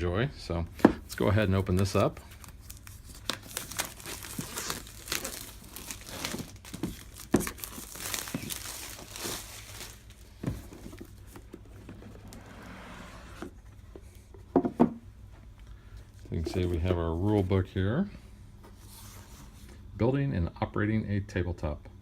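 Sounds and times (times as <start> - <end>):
plastic shrink wrap tearing: 1.6 - 10.3.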